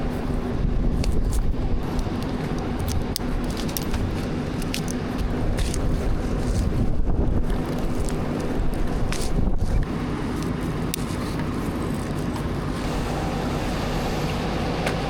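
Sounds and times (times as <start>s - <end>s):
diesel engine running: 0.0s - 15.0s
sharp cracks and snaps: 1.0s - 6.8s.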